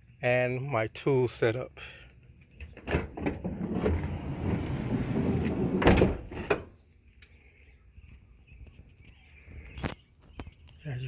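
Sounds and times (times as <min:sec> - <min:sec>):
sliding door rolling: 0:02.8 - 0:06.7
sliding door thud: 0:02.8 - 0:06.7.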